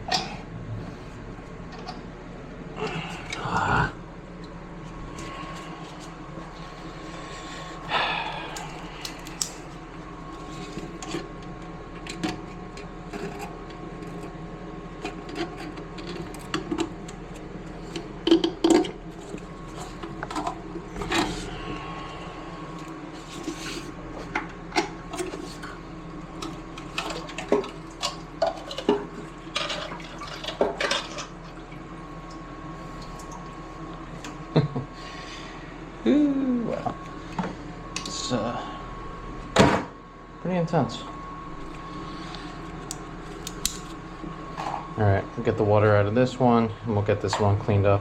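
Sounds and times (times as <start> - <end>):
steady hum: 0.0 - 48.0.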